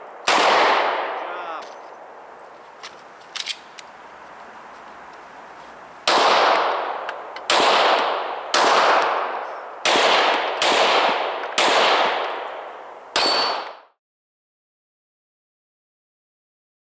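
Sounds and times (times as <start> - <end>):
pistol shots with echo: 0.0 - 2.2, 6.0 - 13.9.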